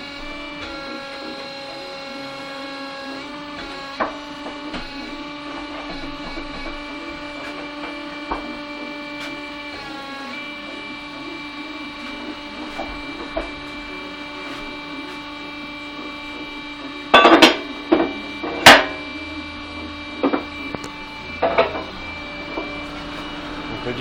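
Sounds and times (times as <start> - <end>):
tyre changer motor hum: 0.0 - 24.0.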